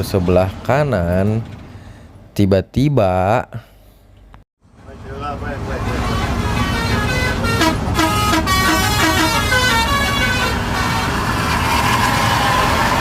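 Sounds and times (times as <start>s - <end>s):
bus engines droning: 0.0s - 2.5s, 3.6s - 13.0s
road noise: 0.0s - 2.6s, 3.6s - 13.0s
bus musical horn: 5.6s - 12.2s.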